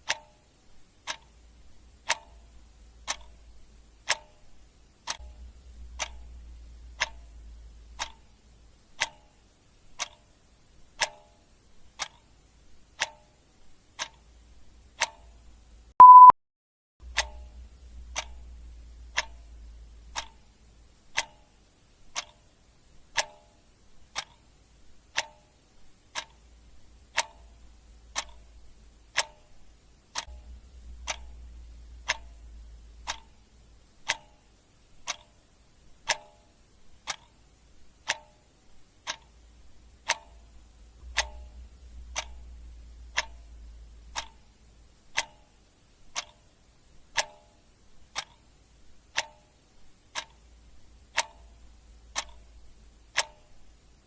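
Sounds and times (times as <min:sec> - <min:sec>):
clock ticking: 0:00.0 - 0:16.3, 0:17.0 - 0:54.0
short high beep: 0:16.0 - 0:16.4.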